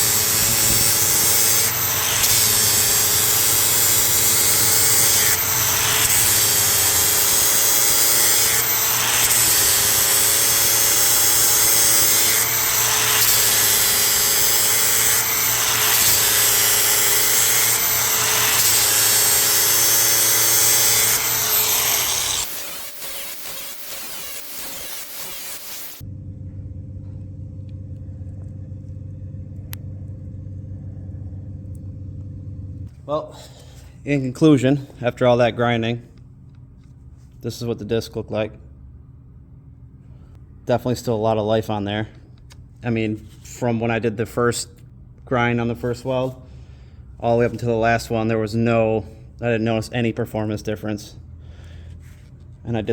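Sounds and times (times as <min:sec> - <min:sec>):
angle grinder grinding metal: 0:00.0 - 0:26.1
low hum: 0:00.0 - 0:33.8.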